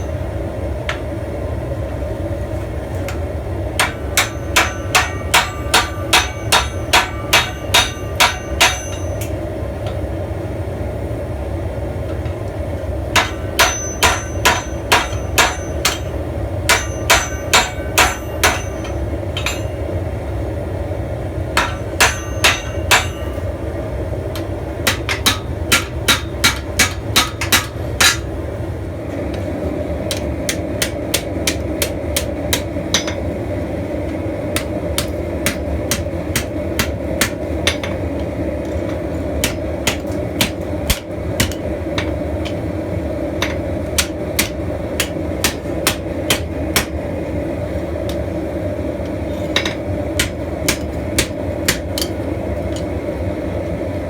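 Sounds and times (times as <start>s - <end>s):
hammer striking steel on anvil: 3.8s - 10.0s, 13.1s - 20.0s, 21.6s - 23.6s, 24.3s - 28.5s, 30.1s - 33.4s, 34.6s - 42.7s, 43.4s - 47.0s, 49.3s - 52.9s.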